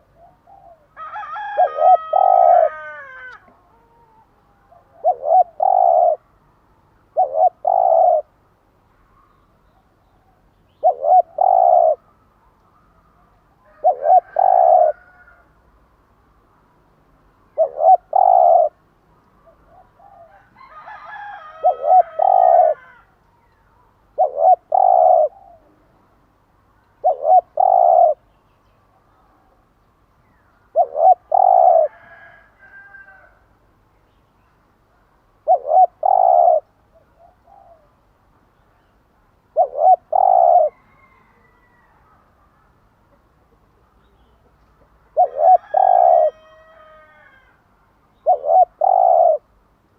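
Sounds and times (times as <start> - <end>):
dove cooing: 0.0 - 6.3, 7.0 - 8.4, 10.3 - 12.2, 12.8 - 15.4, 17.5 - 18.8, 19.4 - 25.9, 27.0 - 28.3, 30.7 - 33.4, 35.4 - 38.0, 39.5 - 41.8, 43.2 - 47.5, 48.2 - 49.5.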